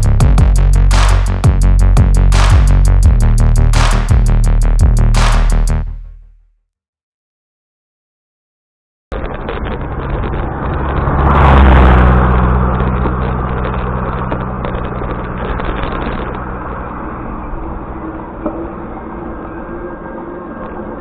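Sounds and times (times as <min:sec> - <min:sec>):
motor vehicle engine running: 0:09.5 - 0:20.6
vehicle passing by: 0:09.8 - 0:19.2.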